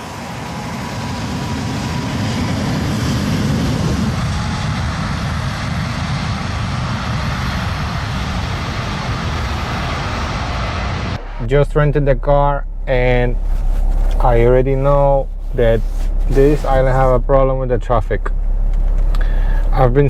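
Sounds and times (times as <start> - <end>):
jet engines roaring at takeoff: 0.0 - 12.3.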